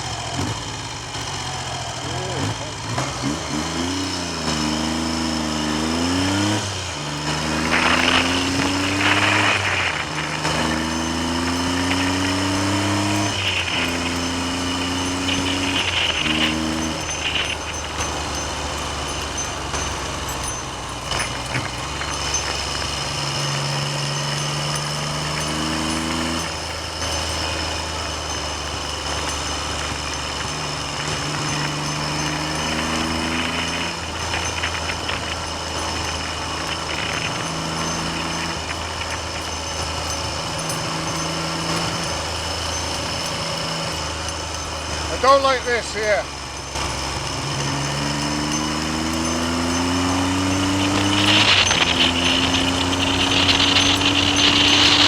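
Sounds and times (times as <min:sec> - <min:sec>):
motorcycle engine changing gear: 0:00.0 - 0:55.0
wind noise on microphone: 0:04.4 - 0:45.2, 0:46.2 - 0:55.0.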